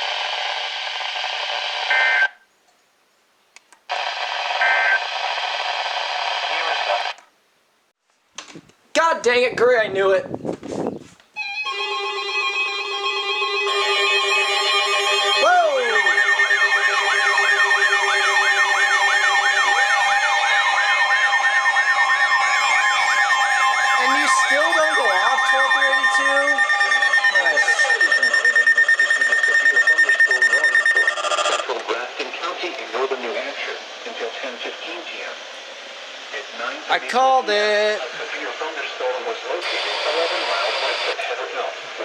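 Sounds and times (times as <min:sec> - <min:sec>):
electronic siren yelping: 0:00.0 - 0:02.4, 0:03.9 - 0:07.2, 0:11.4 - 0:31.7
radio broadcast hiss: 0:06.0 - 0:07.3, 0:27.3 - 0:42.0
steady tones: 0:11.4 - 0:31.5
short data chirp: 0:16.0 - 0:31.7.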